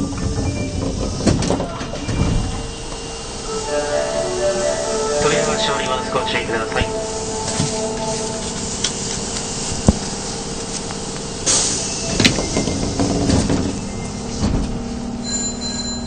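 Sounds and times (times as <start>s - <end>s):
train hum: 0.0s - 15.2s
sliding doors thumping shut: 12.1s - 14.8s.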